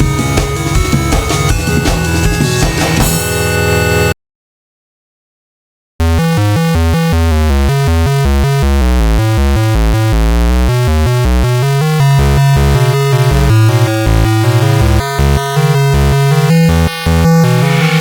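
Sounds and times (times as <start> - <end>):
synthesizer alarm music: 0.0 - 4.2, 12.0 - 18.0.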